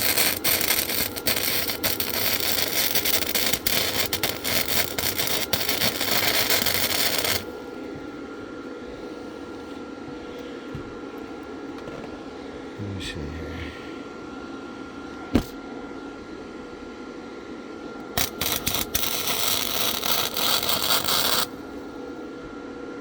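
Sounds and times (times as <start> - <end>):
welding arc crackling: 0.0 - 7.5, 18.2 - 21.7
steady hum: 0.0 - 23.0.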